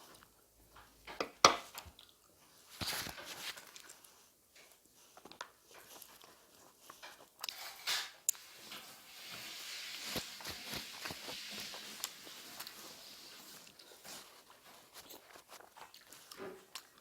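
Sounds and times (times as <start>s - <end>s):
soft hiss: 8.1s - 14.8s
short rustle: 8.4s - 15.7s
chewing clicks and knocks: 15.0s - 17.0s.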